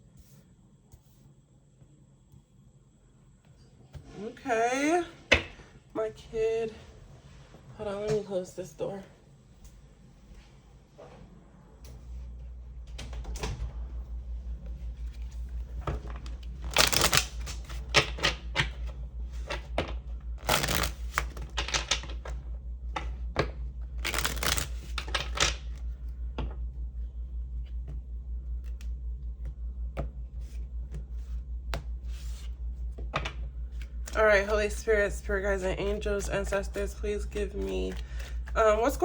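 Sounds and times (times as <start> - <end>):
cards being shuffled: 15.0 - 25.9, 30.4 - 34.8, 35.8 - 38.9.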